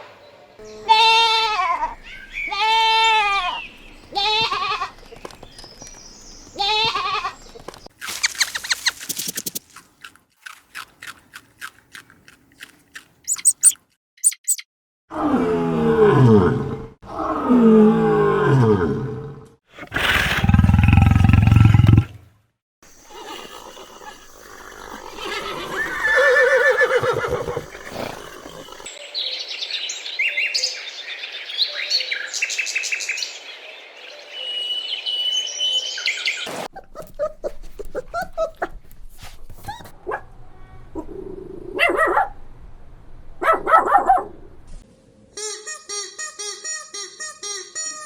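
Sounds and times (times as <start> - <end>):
high rapid chirping: 8.0 - 9.7, 13.3 - 14.6.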